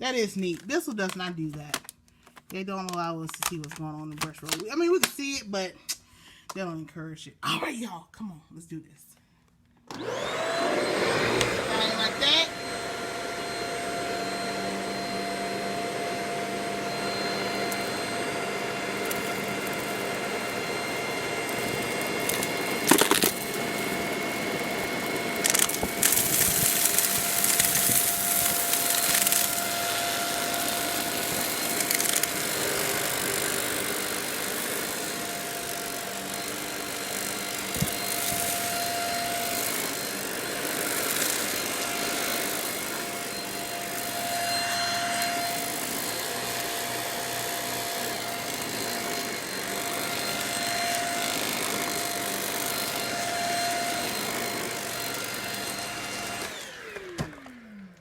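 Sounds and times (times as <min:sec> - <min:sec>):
stick vacuum motor whining: 0:00.0 - 0:05.3, 0:09.8 - 0:58.0
debris crackling in vacuum: 0:25.4 - 0:30.5.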